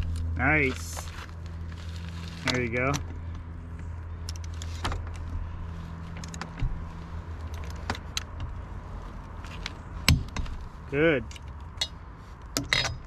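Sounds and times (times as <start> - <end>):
low hum: 0.0 - 13.0
metallic clinks of lug nuts: 11.2 - 12.0, 12.6 - 13.0.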